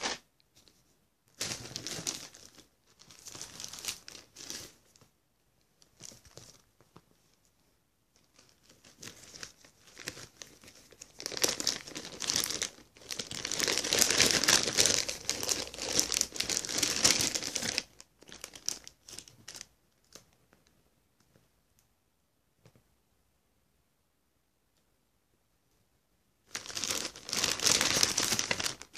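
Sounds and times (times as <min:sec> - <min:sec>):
packaging crinkling and rustling: 0:01.3 - 0:05.0, 0:08.2 - 0:20.2, 0:26.5 - 0:28.9.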